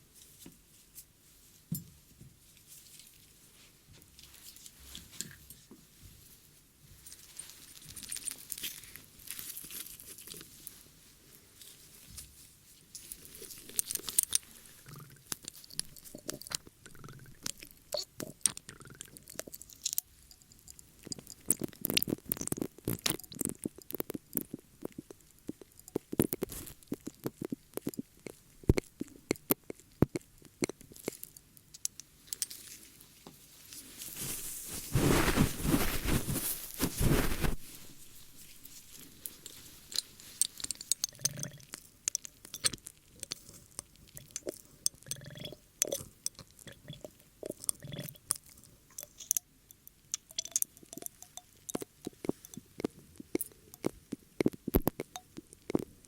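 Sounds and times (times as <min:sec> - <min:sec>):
ear cleaning crackling and scratching: 0:13.0 - 0:32.9, 0:33.6 - 0:49.4, 0:50.3 - 0:56.0
rubbing near microphone: 0:34.0 - 0:38.9.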